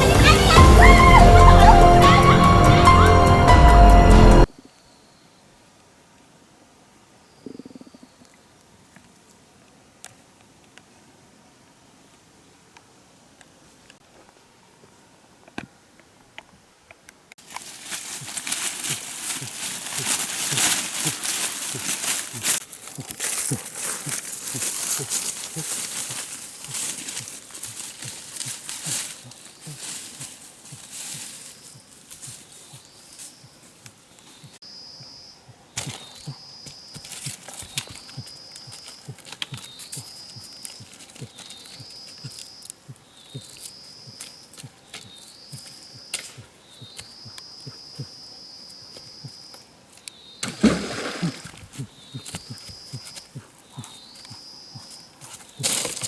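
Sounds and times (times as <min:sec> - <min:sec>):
high-pitched animal call: 0:00.0 - 0:03.2
crackling and rustling: 0:15.5 - 0:34.6, 0:35.8 - 0:48.1, 0:48.8 - 0:56.0.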